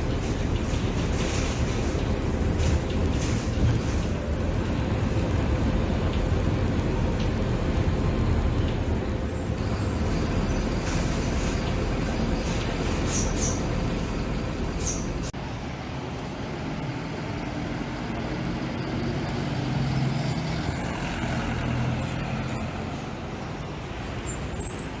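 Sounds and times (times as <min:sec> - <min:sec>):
bus diesel engine running: 0:00.0 - 0:25.0
short high squeaks: 0:09.8 - 0:15.3, 0:24.2 - 0:25.0.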